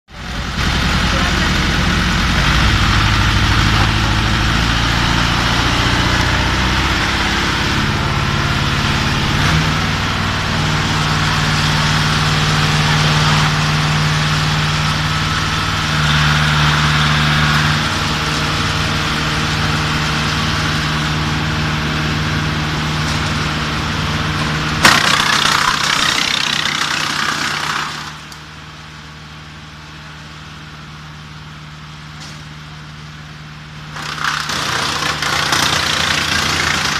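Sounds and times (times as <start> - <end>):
wood chipper diesel engine running: 0.1 - 36.9
rough rushing noise: 0.6 - 21.4
sharp crack and rough grinding: 1.8 - 15.1, 24.4 - 28.4, 33.9 - 36.9.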